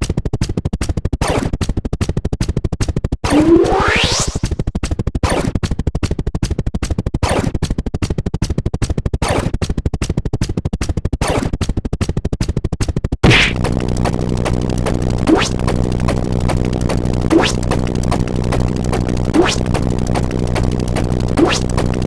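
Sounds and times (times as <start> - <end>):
rapid electronic clicks: 0.0 - 22.0
falling electronic swoop: 3.2 - 4.5, 21.4 - 22.0.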